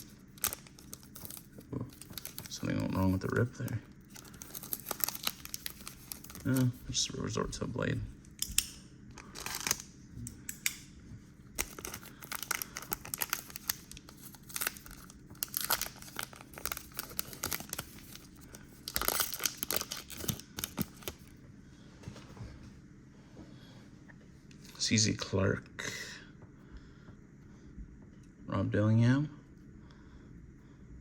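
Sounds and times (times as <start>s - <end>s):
wrapper crinkling and tearing: 0.0s - 6.8s, 9.2s - 9.9s, 11.6s - 21.3s.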